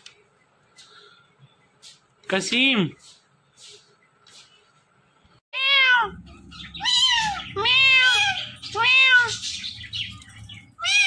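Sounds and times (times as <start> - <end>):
parrot meowing like a cat: 5.5 - 6.2, 6.8 - 9.4, 10.8 - 11.0.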